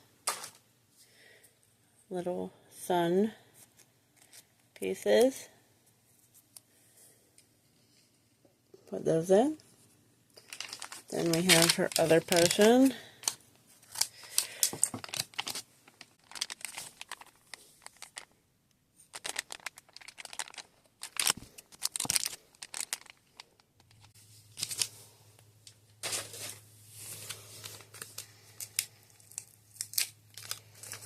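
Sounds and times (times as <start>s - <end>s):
packaging crinkling and tearing: 10.4s - 18.4s, 19.0s - 31.0s.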